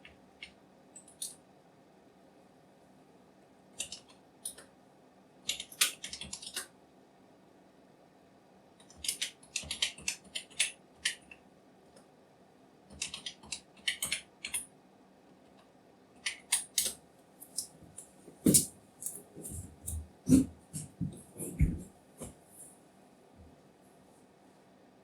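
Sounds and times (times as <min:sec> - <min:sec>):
keyboard typing: 0:05.5 - 0:06.6, 0:08.8 - 0:11.2, 0:12.9 - 0:14.6.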